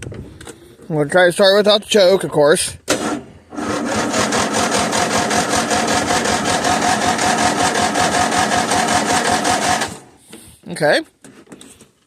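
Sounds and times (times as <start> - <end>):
starter cranking mower engine: 2.9 - 10.1.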